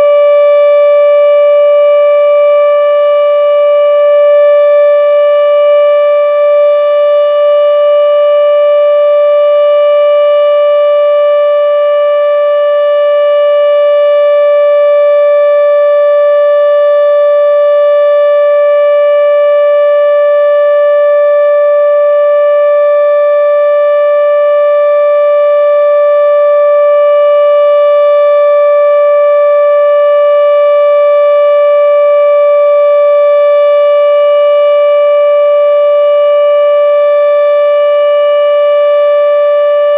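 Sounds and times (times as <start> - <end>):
outdoor warning siren: 0.0 - 39.9.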